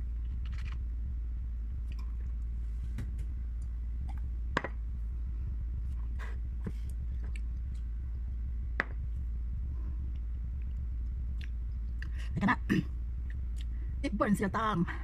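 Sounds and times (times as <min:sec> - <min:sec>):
steady low hum: 0:00.0 - 0:15.0
close-up chewing with wet clicks: 0:00.2 - 0:00.8, 0:10.1 - 0:12.2.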